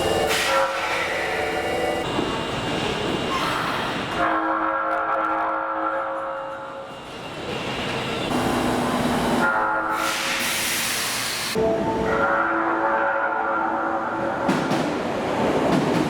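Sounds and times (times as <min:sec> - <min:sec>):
train horn blast: 0:00.0 - 0:01.8, 0:04.2 - 0:06.8, 0:11.6 - 0:14.3
train running noise: 0:00.0 - 0:16.0.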